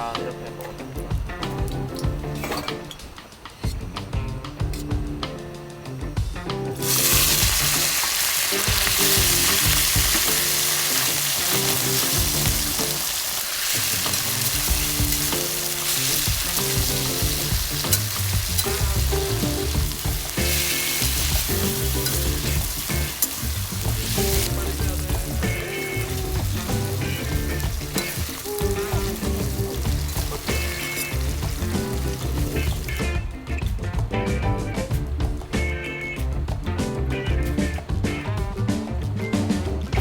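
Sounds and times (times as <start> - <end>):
background music: 0.0 - 40.0
food sizzling in hot oil: 6.8 - 33.5.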